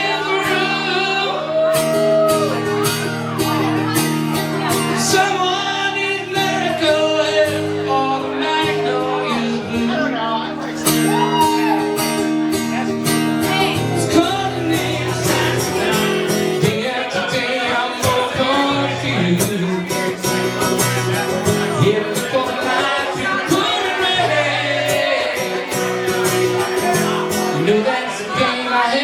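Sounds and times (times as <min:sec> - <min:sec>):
man singing: 0:00.0 - 0:02.6, 0:04.5 - 0:11.3, 0:13.4 - 0:29.0.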